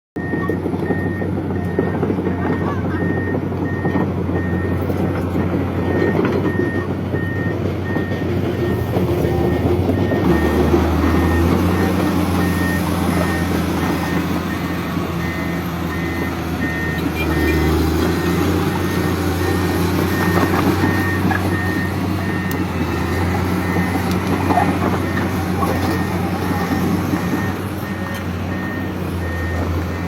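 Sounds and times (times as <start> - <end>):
excavator diesel engine running: 0.2 - 30.0.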